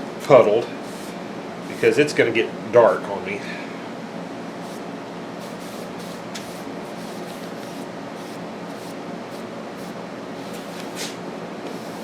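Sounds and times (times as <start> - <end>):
paintbrush swishing on board: 0.8 - 2.0, 4.6 - 4.8, 5.4 - 12.0.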